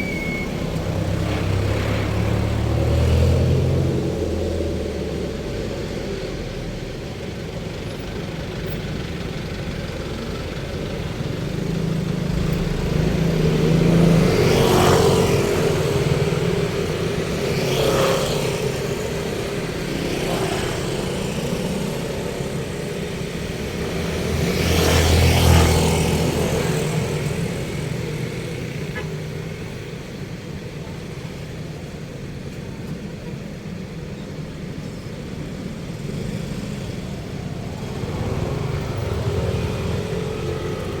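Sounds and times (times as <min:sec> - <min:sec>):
road traffic rumble: 0:00.0 - 0:41.0
vehicles passing close: 0:00.0 - 0:41.0.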